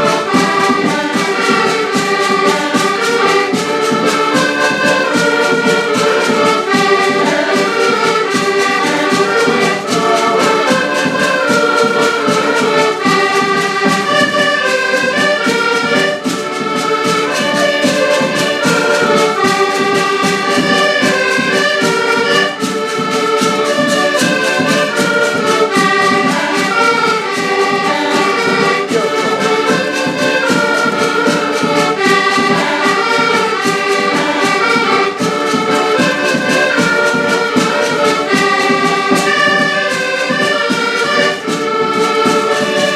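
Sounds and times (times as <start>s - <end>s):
brass band playing: 0.0s - 42.9s.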